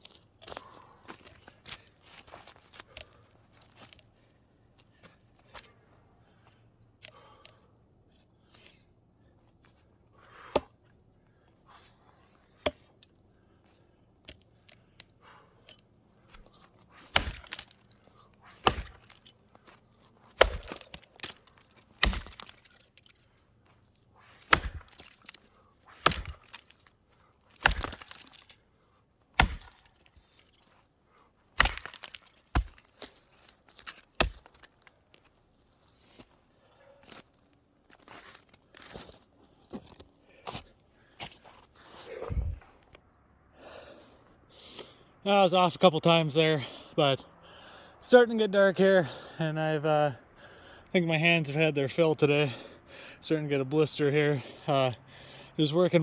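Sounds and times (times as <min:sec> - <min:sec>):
axe chopping wood: 0:10.4 - 0:10.8, 0:12.6 - 0:12.9, 0:17.0 - 0:17.8, 0:18.5 - 0:19.2, 0:20.3 - 0:22.7, 0:24.4 - 0:26.8, 0:27.5 - 0:28.4, 0:29.4 - 0:30.1, 0:31.6 - 0:33.0, 0:33.8 - 0:34.7.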